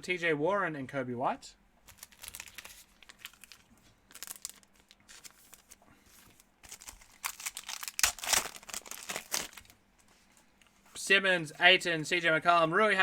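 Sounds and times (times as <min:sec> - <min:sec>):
foil wrapper crinkling and tearing: 0:01.8 - 0:05.8, 0:06.4 - 0:09.8.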